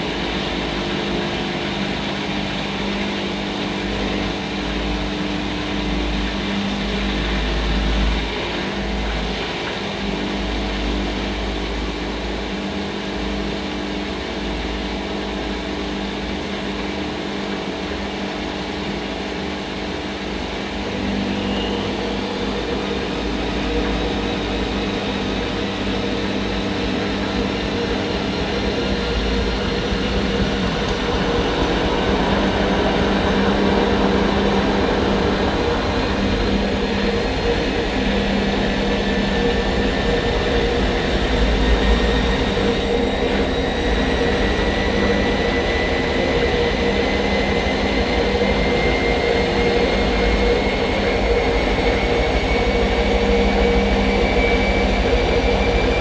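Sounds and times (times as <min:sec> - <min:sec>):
washing machine running: 0:19.6 - 0:56.0.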